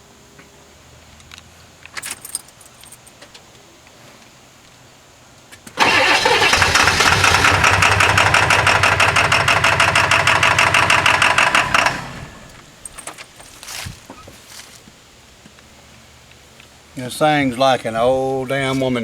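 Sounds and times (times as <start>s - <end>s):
diesel engine starter cranking: 5.6s - 13.6s.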